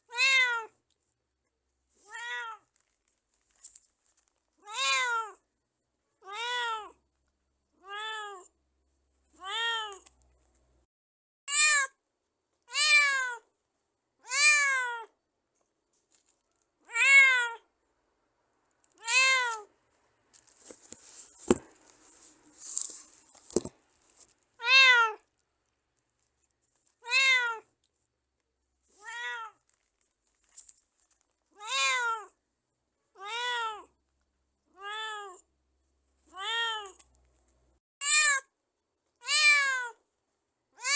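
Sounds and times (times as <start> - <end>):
cat meowing: 0.1 - 0.7, 2.1 - 2.6, 4.6 - 5.4, 14.2 - 15.1, 16.9 - 17.6, 19.0 - 19.7, 24.6 - 25.2, 27.0 - 27.7, 29.0 - 29.6, 31.6 - 32.3, 33.2 - 33.9, 34.8 - 35.4, 36.3 - 37.0, 39.2 - 40.0.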